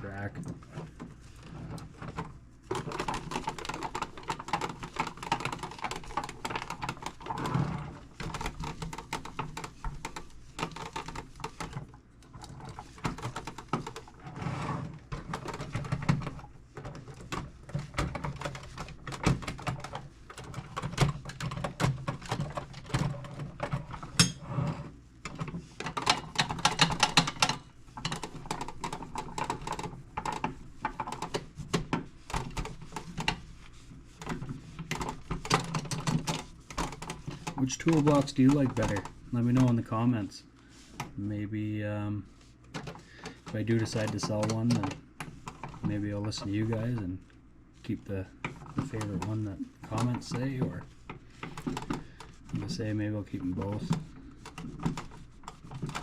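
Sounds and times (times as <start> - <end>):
cloth rubbing on metal: 27.8 - 42.7, 47.7 - 56.0.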